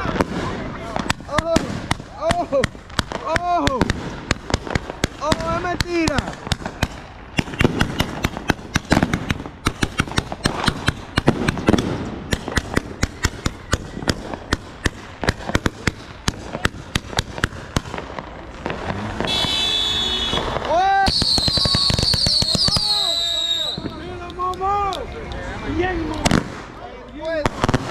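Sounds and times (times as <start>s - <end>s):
fireworks cracking and popping: 0.0s - 27.9s
high steady whistle: 21.1s - 24.0s.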